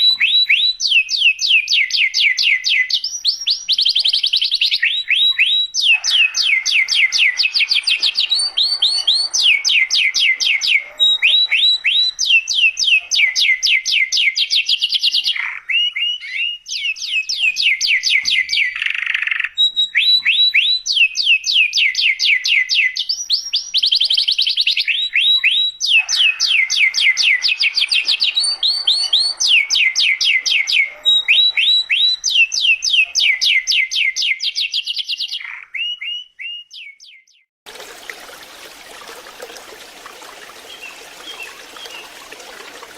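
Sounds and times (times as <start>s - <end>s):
canary singing trills: 0.0s - 37.5s, 40.5s - 42.9s.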